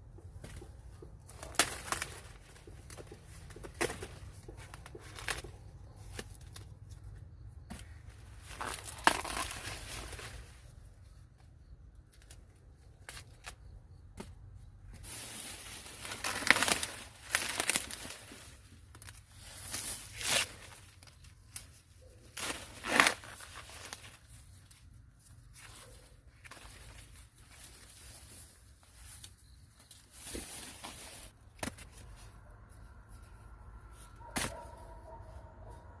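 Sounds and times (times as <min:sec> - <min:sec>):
rustling and tearing: 0:08.4 - 0:10.6, 0:15.0 - 0:34.8.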